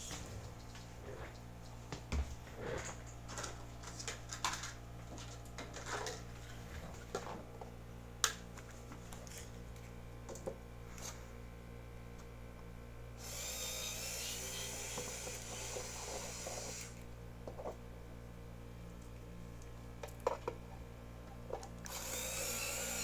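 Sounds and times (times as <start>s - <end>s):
electric screwdriver whirring: 13.2s - 17.0s, 21.9s - 23.0s.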